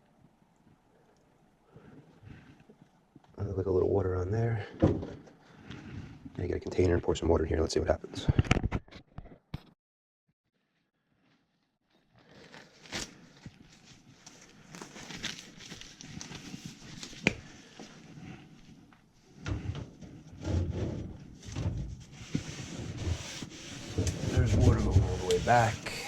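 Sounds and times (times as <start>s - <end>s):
rubbing and bumping: 19.4s - 26.0s.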